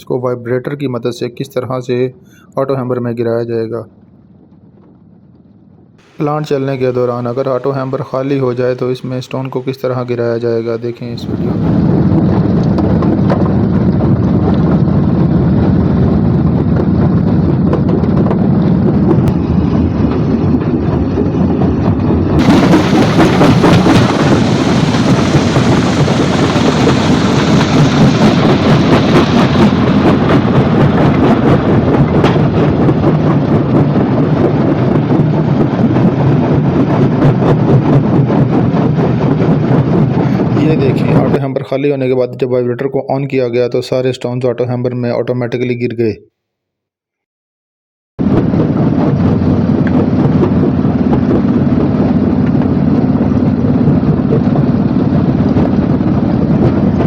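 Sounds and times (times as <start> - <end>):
crushing machinery rumbling: 3.9 - 36.5.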